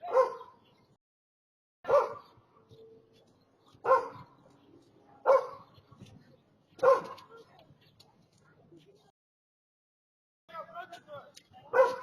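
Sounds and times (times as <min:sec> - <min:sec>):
dog barking: 0:00.0 - 0:00.6, 0:01.8 - 0:02.3, 0:03.8 - 0:04.4, 0:05.2 - 0:05.8, 0:06.8 - 0:07.4, 0:11.7 - 0:12.0.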